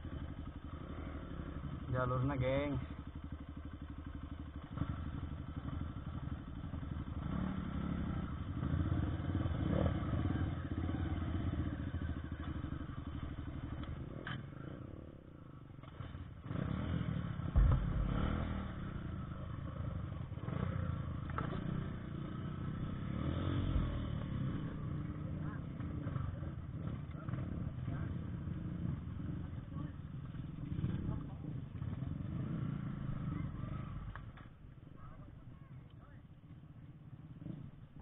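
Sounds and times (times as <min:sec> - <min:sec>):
motorcycle engine revving: 0:00.0 - 0:34.6, 0:36.6 - 0:38.0
loud thump: 0:17.4 - 0:19.6.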